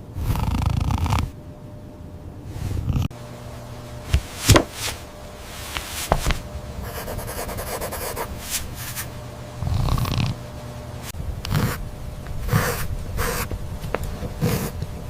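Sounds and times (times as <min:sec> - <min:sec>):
low steady hum: 0:00.0 - 0:15.0
rubbing sounds: 0:04.1 - 0:09.1.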